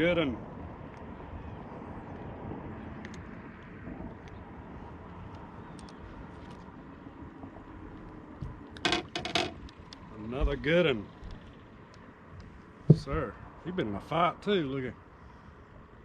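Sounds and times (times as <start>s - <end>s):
light clicks: 5.3s - 6.7s
sharp clatter: 8.8s - 9.8s.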